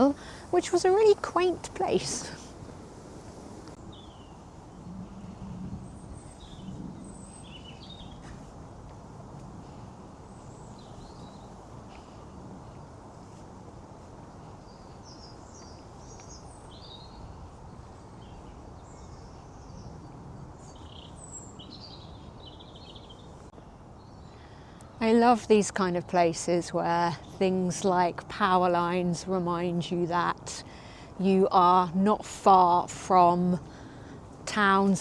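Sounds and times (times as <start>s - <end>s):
small birds chirping: 3.7s - 8.5s, 10.2s - 12.9s, 14.4s - 25.2s.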